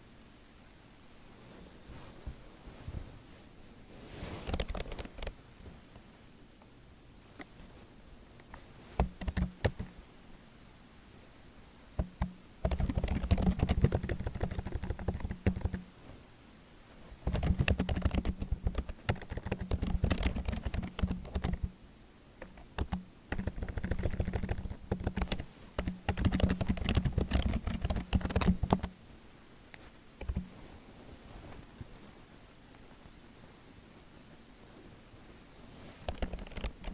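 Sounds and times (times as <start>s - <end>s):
fast typing on keyboard: 4.4s - 5.4s, 8.9s - 9.9s, 12.0s - 15.9s, 17.2s - 21.7s, 22.4s - 29.0s, 30.2s - 30.5s, 35.9s - 36.9s.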